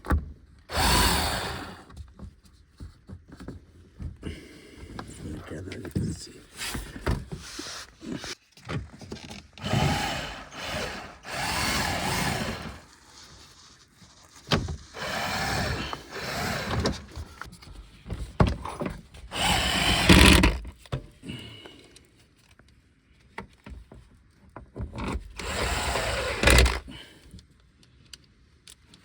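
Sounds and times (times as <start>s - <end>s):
handheld power tool motor: 0.7s - 1.9s, 9.6s - 13.0s, 14.7s - 17.4s, 19.3s - 20.6s, 25.2s - 26.9s.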